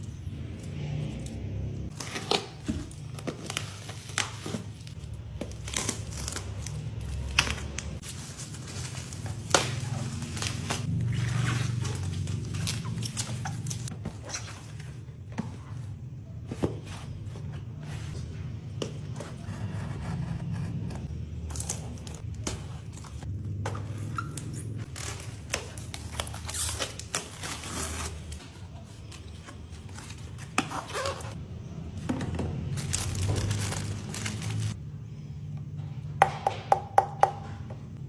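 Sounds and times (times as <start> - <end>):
plastic packaging rustling: 1.9 - 15.0, 21.5 - 31.4, 32.2 - 34.8.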